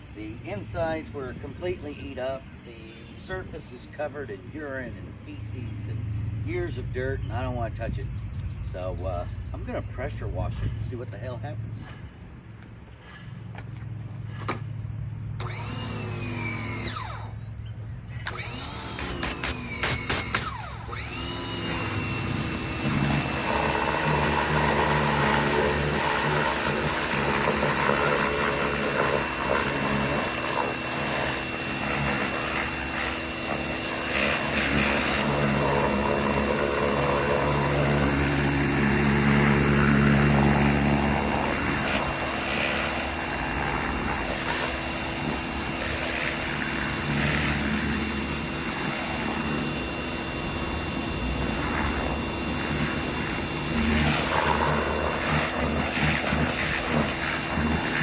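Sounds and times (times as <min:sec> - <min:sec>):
high whine: 0:15.4 - 0:58.0
pressure washer spraying: 0:18.3 - 0:58.0.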